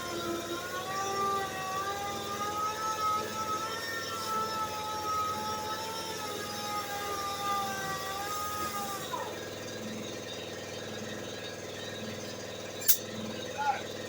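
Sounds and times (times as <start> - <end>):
power grinder whine winding down: 0.0 - 9.1
steady mechanical hum: 0.0 - 14.0
sharp click: 12.8 - 13.0.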